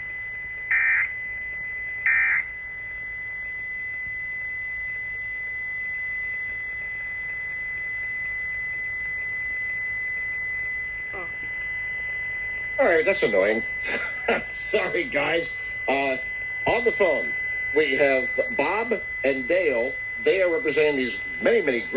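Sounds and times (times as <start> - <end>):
steady high-pitched tone: 0.0 - 21.9
buzzy digital data bursts: 12.7 - 21.9.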